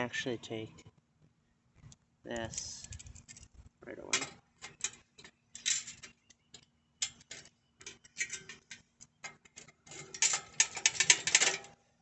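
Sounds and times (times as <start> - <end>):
metal tools clicking and scraping: 2.4 - 3.5, 4.1 - 11.8.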